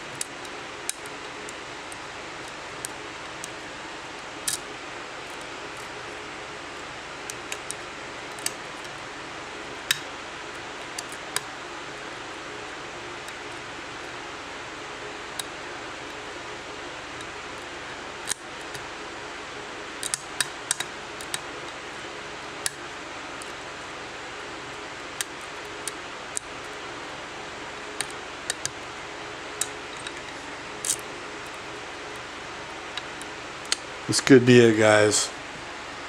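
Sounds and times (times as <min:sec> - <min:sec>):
steady background hiss: 0:00.0 - 0:36.0
lock pick clicking in padlock: 0:20.0 - 0:21.4.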